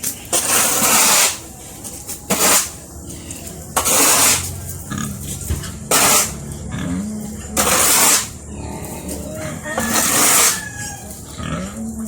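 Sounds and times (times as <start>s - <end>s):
shovel scraping concrete floor: 0.0s - 6.4s, 7.6s - 8.4s, 9.0s - 10.8s.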